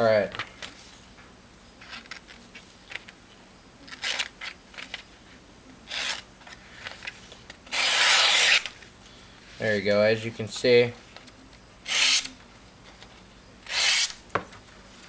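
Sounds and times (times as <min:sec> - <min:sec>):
knife slicing through paper: 0:07.7 - 0:08.7, 0:11.9 - 0:12.3, 0:13.7 - 0:14.2.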